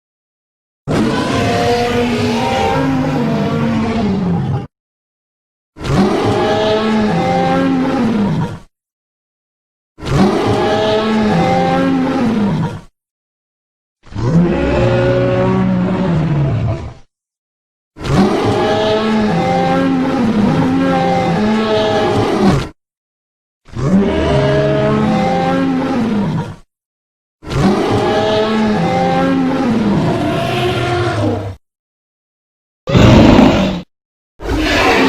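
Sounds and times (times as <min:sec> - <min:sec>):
dinosaur roar: 0:00.9 - 0:04.7, 0:05.8 - 0:08.7, 0:10.0 - 0:12.8, 0:14.0 - 0:17.1, 0:18.0 - 0:22.8, 0:23.7 - 0:26.6, 0:27.5 - 0:31.6, 0:32.9 - 0:35.0.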